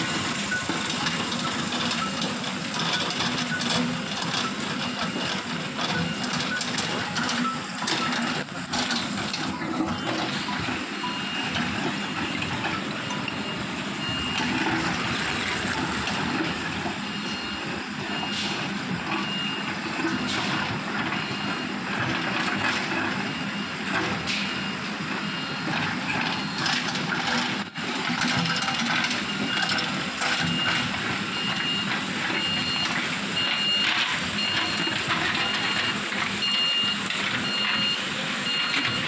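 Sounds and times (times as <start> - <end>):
passing traffic rushing: 9.8 - 19.4.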